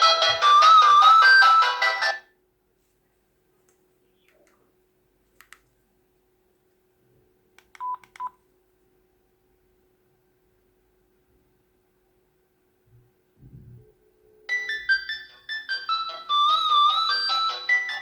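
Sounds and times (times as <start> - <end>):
melodic phone ringtone: 0.0 - 2.3, 14.5 - 18.0.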